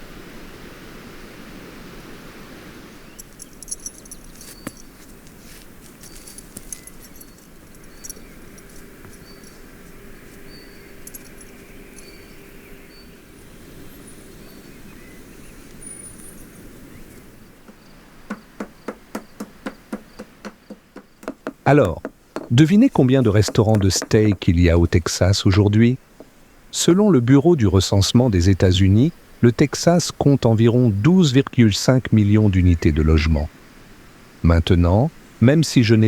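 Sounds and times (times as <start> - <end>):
faint high chirps: 6.0 - 17.3
quick evenly spaced knocks: 17.6 - 25.2, 26.1 - 26.4
scattered ticks: 19.1 - 25.2.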